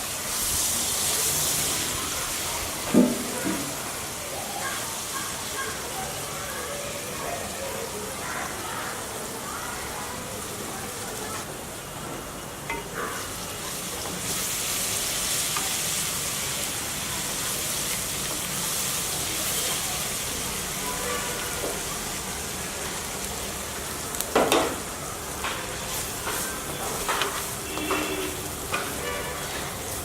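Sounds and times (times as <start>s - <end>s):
food sizzling in a pan: 0.0s - 30.0s
spoon clattering on pan: 12.7s - 13.2s.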